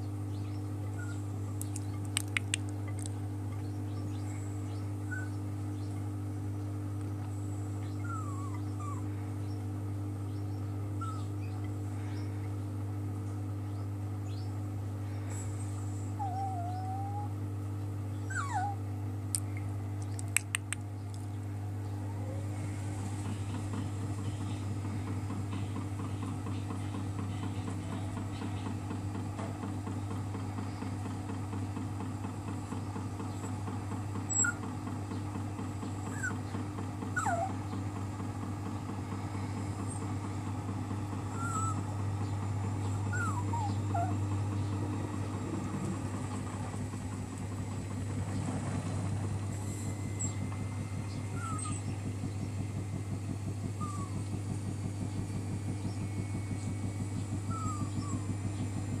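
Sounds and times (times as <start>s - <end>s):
washing machine spin hum: 0.0s - 59.0s
sharp clicks: 1.6s - 3.2s, 19.3s - 21.3s.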